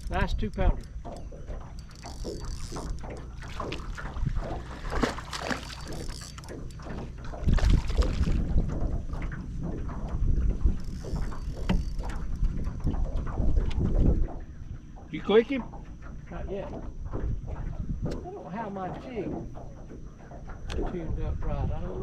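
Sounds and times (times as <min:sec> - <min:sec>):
knocks and clicks in a boat: 0:00.0 - 0:22.0
wind rumble on microphone: 0:02.3 - 0:06.2, 0:06.8 - 0:15.6, 0:16.3 - 0:18.4, 0:20.5 - 0:22.0.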